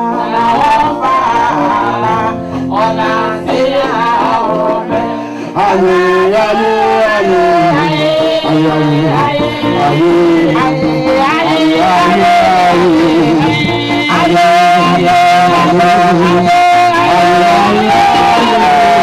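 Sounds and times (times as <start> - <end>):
singing over instruments: 0.0 - 19.0.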